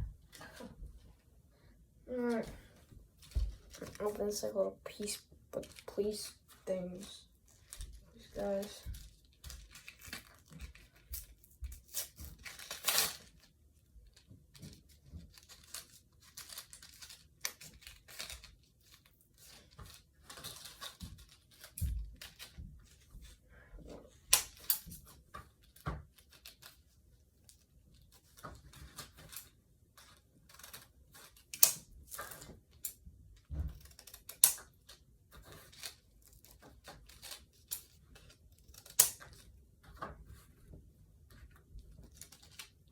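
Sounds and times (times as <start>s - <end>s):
packaging rustling and crinkling: 2.3s - 23.4s
packaging tearing: 9.6s - 13.5s.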